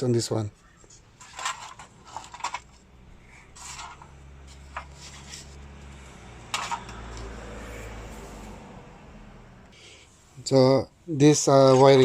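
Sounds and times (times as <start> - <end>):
clicks and knocks of handled parts: 0.8 - 2.9, 3.5 - 7.3.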